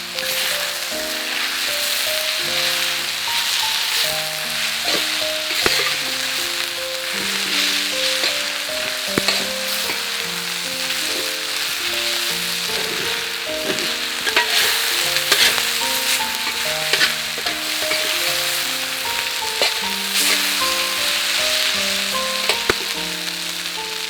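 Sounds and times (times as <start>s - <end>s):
noodles sizzling on griddle: 0.0s - 24.0s
soft background music: 0.0s - 24.0s
spatula clicks and scrapes: 9.2s - 9.9s, 13.6s - 15.7s.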